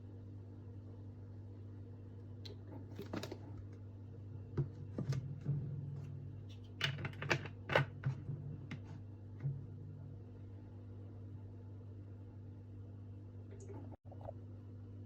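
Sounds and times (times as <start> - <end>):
low hum: 8.2 - 15.0.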